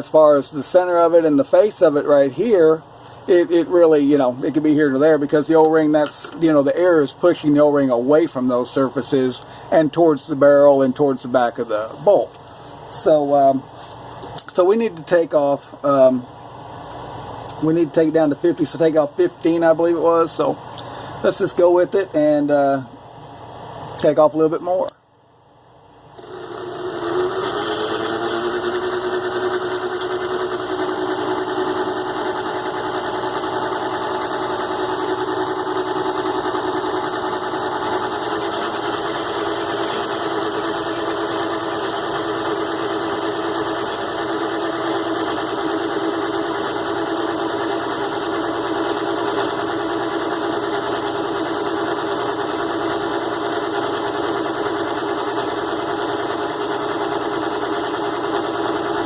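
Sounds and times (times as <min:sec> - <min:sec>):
small lathe motor humming: 0:26.1 - 0:59.0.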